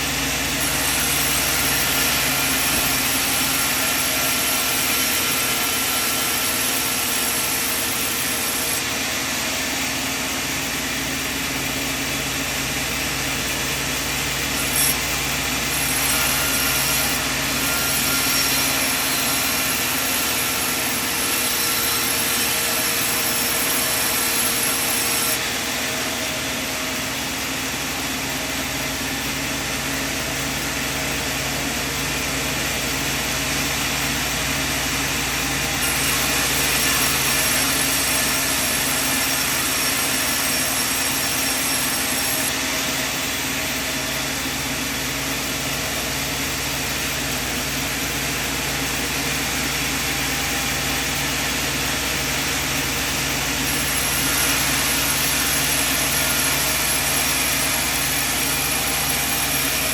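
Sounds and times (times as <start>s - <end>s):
sawmill machinery humming: 0.0s - 59.9s.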